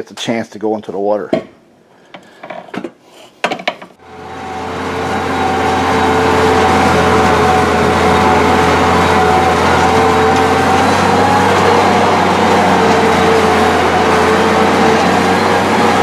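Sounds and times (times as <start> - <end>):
engine running: 4.0 - 16.0.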